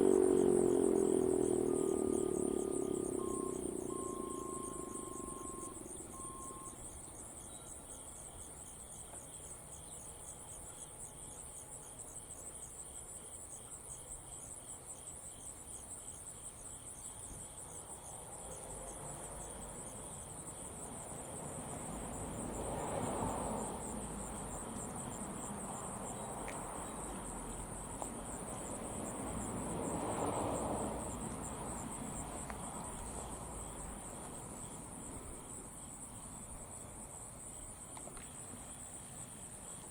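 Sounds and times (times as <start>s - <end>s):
insect trilling: 0.0s - 6.9s.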